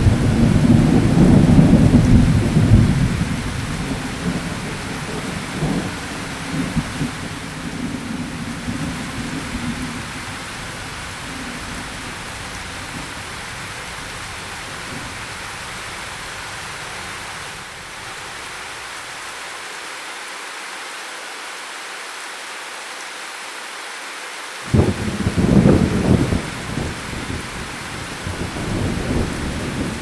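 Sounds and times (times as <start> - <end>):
thunder rumbling: 0.0 - 17.5, 24.7 - 30.0
heavy rain falling: 0.0 - 30.0.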